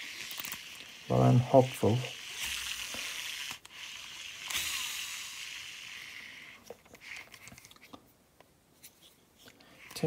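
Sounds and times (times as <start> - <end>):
fishing reel spool whirring: 0.0 - 6.6.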